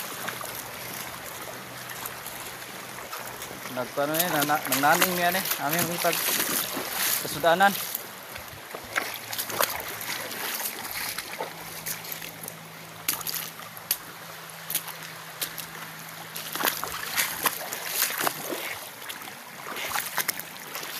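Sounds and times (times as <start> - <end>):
creek water splashing: 0.0 - 20.9
faint steady hum: 0.0 - 20.9.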